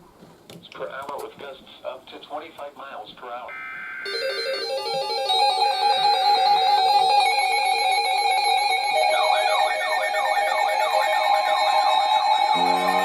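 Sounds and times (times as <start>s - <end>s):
steady electronic alarm tone: 3.5s - 13.0s
warbling sweeping alarm tones: 8.1s - 13.0s
rapidly repeating beeps: 9.0s - 13.0s.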